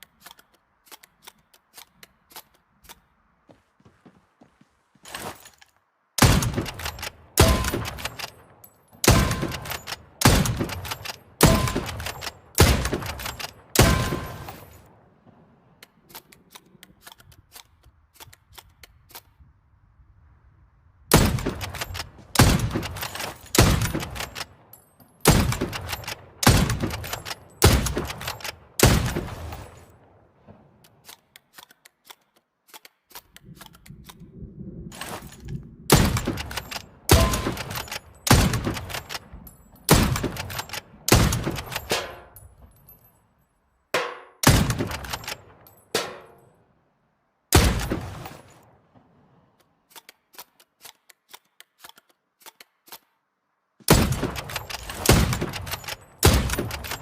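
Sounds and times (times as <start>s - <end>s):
rifle gunshots: 6.2s - 14.7s, 21.1s - 24.5s, 25.2s - 30.0s, 35.9s - 42.3s, 44.0s - 46.3s, 47.5s - 48.7s, 53.9s - 57.0s
faint small clicks: 30.8s - 34.3s.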